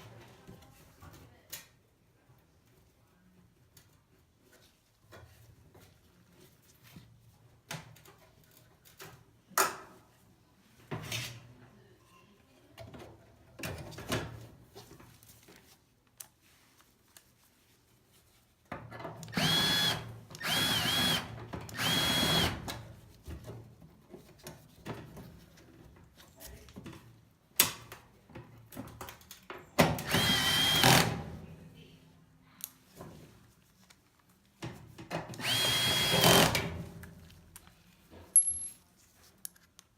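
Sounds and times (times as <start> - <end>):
power drill whining: 19.3 - 22.7, 30.0 - 31.1, 35.4 - 36.6.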